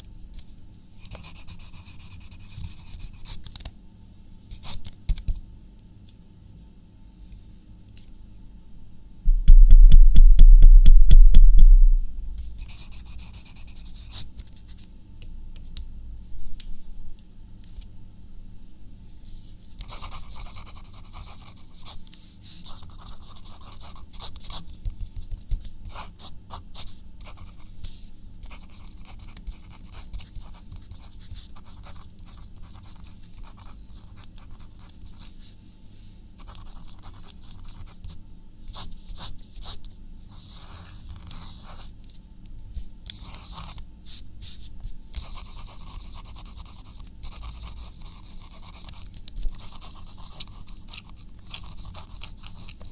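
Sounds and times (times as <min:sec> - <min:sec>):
pen scratching on paper: 0:45.2 - 0:49.0, 0:49.6 - 0:52.9.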